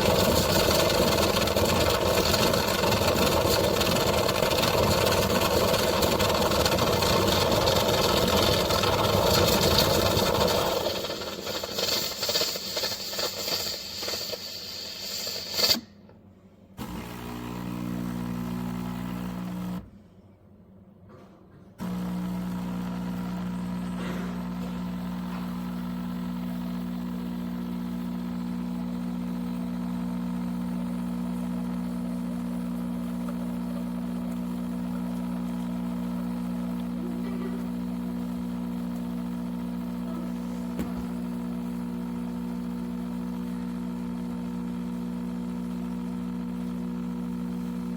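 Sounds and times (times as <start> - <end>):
espresso machine running: 0.0 - 15.9, 16.8 - 19.9, 21.8 - 47.9
pump humming: 16.8 - 19.9, 21.8 - 47.9.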